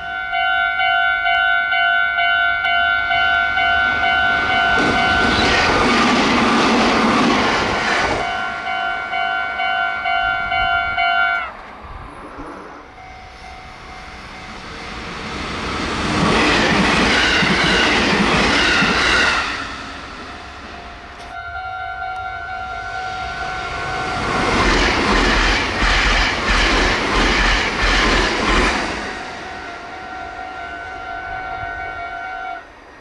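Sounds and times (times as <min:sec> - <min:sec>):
level crossing warning bell: 0:00.0 - 0:05.5, 0:08.2 - 0:11.5, 0:12.9 - 0:15.3
train rushing past: 0:02.5 - 0:33.0.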